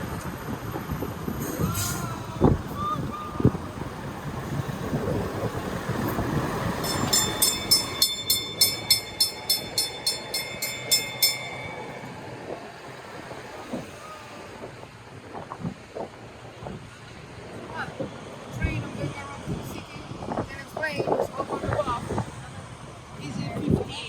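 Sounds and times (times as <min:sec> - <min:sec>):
low vehicle rumble: 0:00.0 - 0:23.3
rapid ringing bell: 0:06.8 - 0:12.6.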